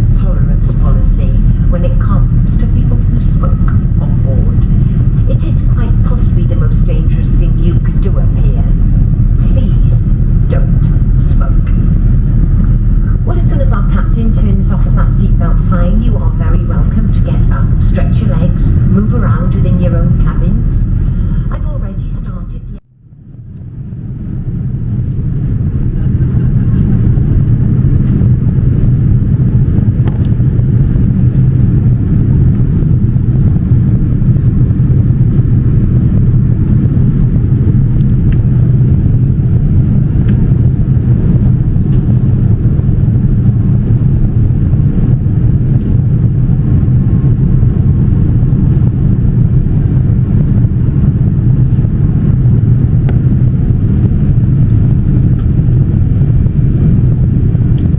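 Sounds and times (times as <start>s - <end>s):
aircraft cabin engine rumble: 0.0s - 57.9s.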